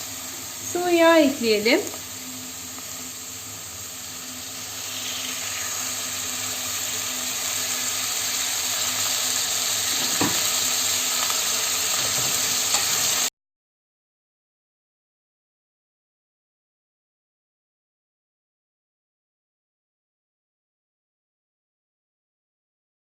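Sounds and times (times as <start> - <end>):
leeks sizzling in hot oil: 0.0 - 13.3.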